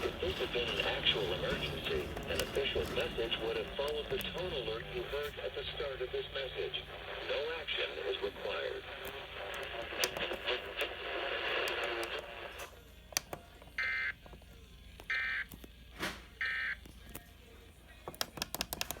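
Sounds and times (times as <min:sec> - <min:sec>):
scattered clicks: 0:00.0 - 0:05.3, 0:08.9 - 0:13.5, 0:18.1 - 0:19.0
radio hiss: 0:00.0 - 0:12.8.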